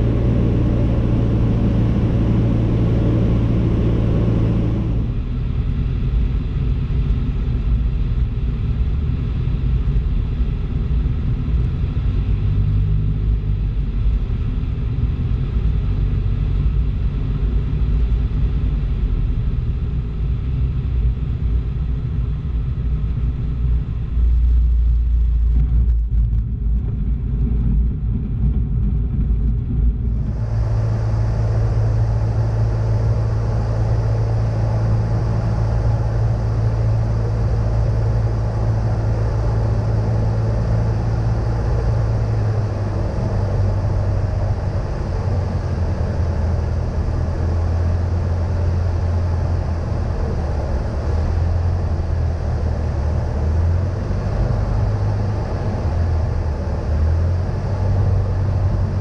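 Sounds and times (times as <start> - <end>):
broad rushing noise: 0.0 - 5.2, 30.1 - 59.0
aircraft engine drone: 0.0 - 59.0.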